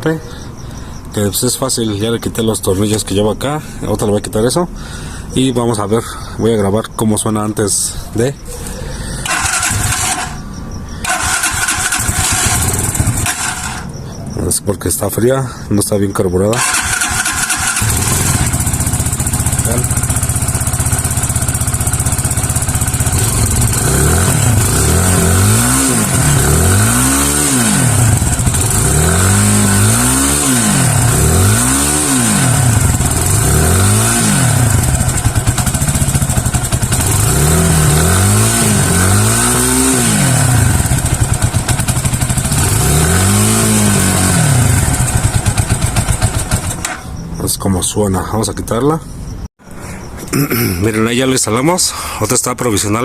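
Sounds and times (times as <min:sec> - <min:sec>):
motorcycle engine idling and revving: 0:08.4 - 0:14.0, 0:16.5 - 0:47.4.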